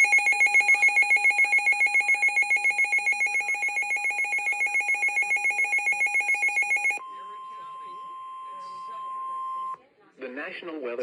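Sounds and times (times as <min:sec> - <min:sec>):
electronic alert alarm warble: 0:00.0 - 0:07.6.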